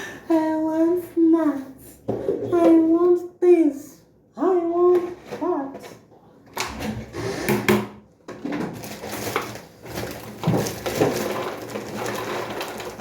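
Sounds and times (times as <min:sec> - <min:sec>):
rustling: 0:08.7 - 0:13.0.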